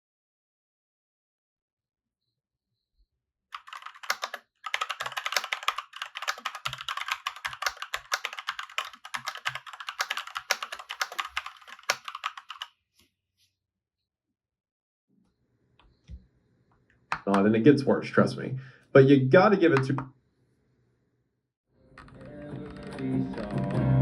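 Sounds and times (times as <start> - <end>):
mechanical keyboard key clacks: 3.6 - 12.3.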